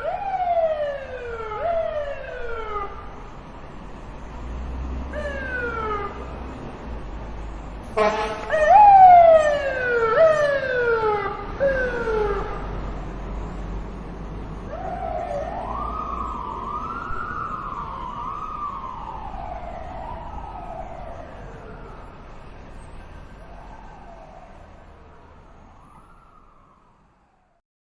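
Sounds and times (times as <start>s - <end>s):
fire truck siren wailing: 0.0s - 27.6s.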